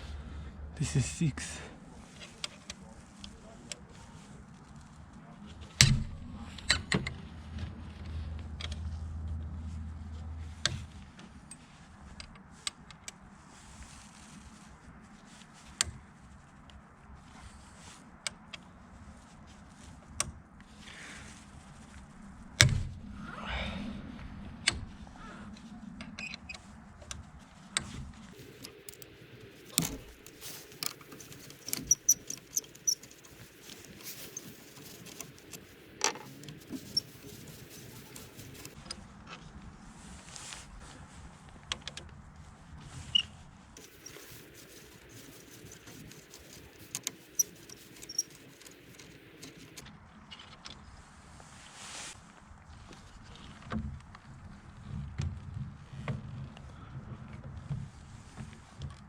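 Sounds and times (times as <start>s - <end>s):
metal hand tools clicking: 28.4s - 38.8s.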